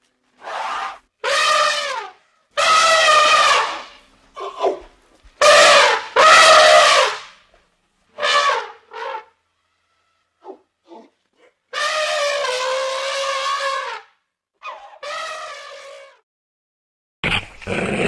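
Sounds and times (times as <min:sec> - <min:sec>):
loud drawn-out animal calls: 0:00.4 - 0:07.4, 0:08.2 - 0:16.2.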